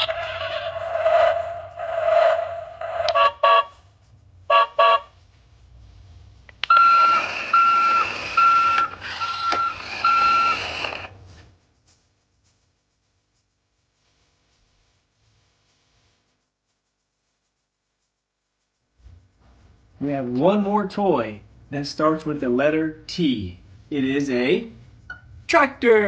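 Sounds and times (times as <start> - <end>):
toy horn honks: 3.1 - 3.7, 4.5 - 5.1
recorded engine noise: 6.6 - 11.2
electronic beeps: 6.7 - 11.1.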